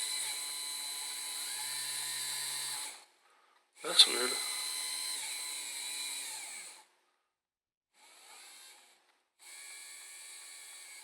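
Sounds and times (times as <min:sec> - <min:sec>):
electric motors whirring: 0:00.0 - 0:03.0, 0:03.8 - 0:06.9.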